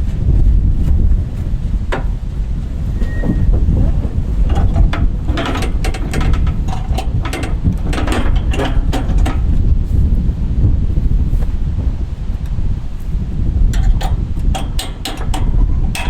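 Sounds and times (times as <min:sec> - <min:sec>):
wind rumbling on microphone: 0:00.0 - 0:16.0
irregular clicks and rattles: 0:03.6 - 0:09.6, 0:13.7 - 0:16.0.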